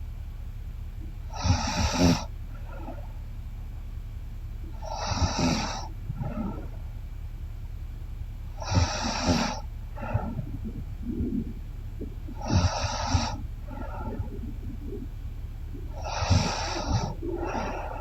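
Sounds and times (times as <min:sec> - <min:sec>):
woman snoring: 0:01.4 - 0:02.3, 0:04.9 - 0:05.9, 0:08.6 - 0:09.6, 0:12.4 - 0:13.4, 0:16.0 - 0:18.0
soft breath: 0:04.6 - 0:07.0, 0:08.5 - 0:18.0.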